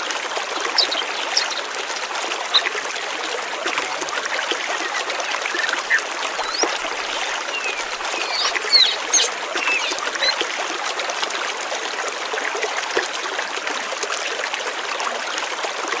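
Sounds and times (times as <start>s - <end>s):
water trickling: 0.0s - 14.9s
birds chirping: 0.6s - 1.7s, 2.4s - 3.0s, 3.9s - 10.5s.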